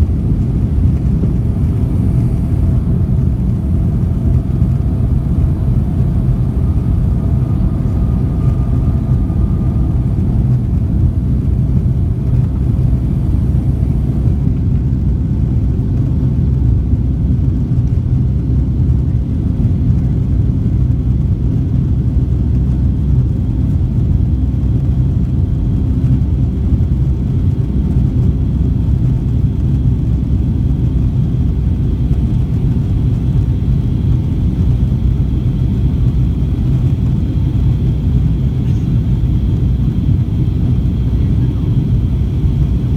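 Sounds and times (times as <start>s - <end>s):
faint high whine: 0.0s - 14.9s, 35.8s - 42.9s
airplane cabin engine rumble: 0.0s - 42.9s.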